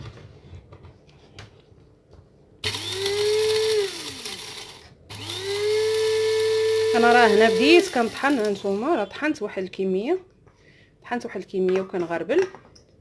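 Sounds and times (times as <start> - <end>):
electric spice grinder whining: 2.6 - 9.0.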